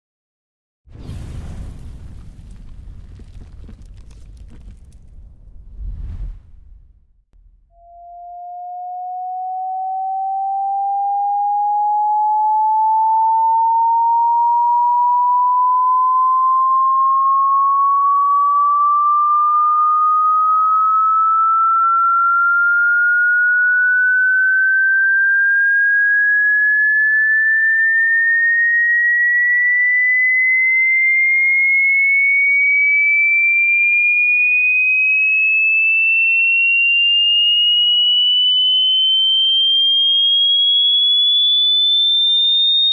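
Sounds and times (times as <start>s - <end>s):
rising electronic whistle tone: 7.4s - 31.0s, 37.2s - 42.9s.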